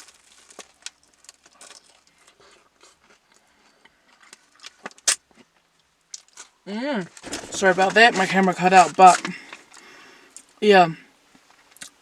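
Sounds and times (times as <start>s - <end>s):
paper packaging rustling: 7.2s - 9.6s.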